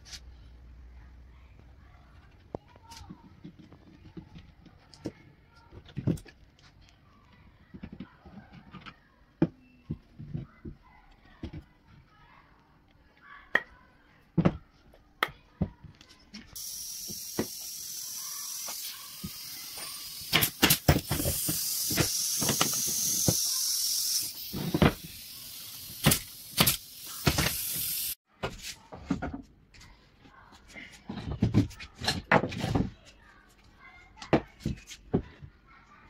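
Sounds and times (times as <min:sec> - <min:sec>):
steady hissing spray: 0:16.6 - 0:28.2.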